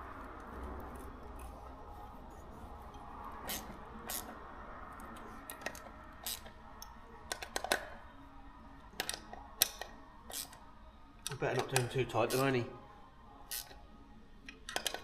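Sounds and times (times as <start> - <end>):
metallic clicks of hand tools: 5.5 - 8.0, 9.0 - 10.6, 14.5 - 15.0.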